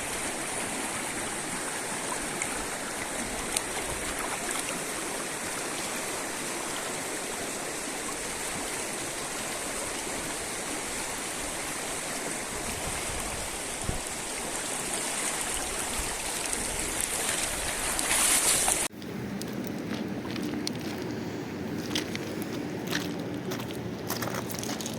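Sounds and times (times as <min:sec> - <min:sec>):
rushing river water: 0:00.0 - 0:18.9.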